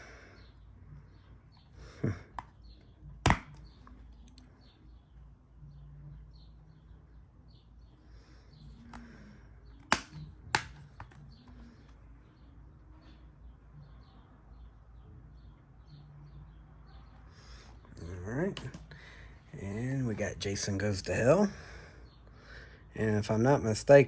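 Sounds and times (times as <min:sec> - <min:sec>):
sharp clicks and taps: 0:09.8 - 0:11.3.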